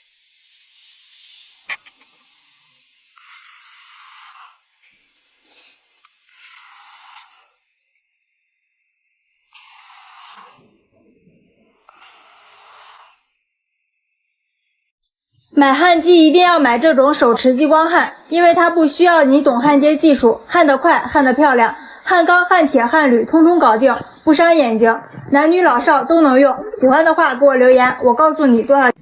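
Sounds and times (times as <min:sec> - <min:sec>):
hissing breaths in diving helmet: 0:00.0 - 0:07.8, 0:08.8 - 0:13.4, 0:18.6 - 0:28.7.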